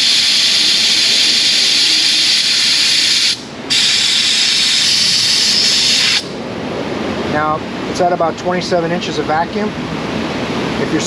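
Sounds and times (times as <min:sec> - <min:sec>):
vacuum refiller hissing: 0:00.0 - 0:06.3.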